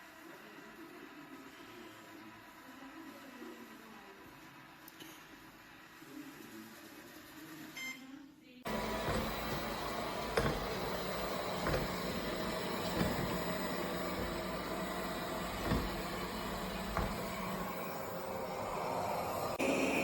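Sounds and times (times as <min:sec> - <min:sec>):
short knocks: 0:08.7 - 0:18.5
robot vacuum whirring: 0:08.7 - 0:20.0.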